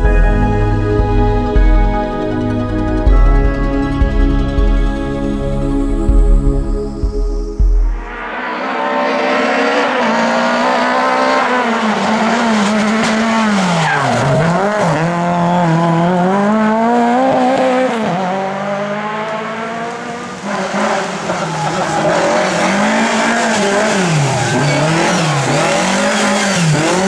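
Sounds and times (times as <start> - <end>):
race car engine revving: 8.1 - 27.0.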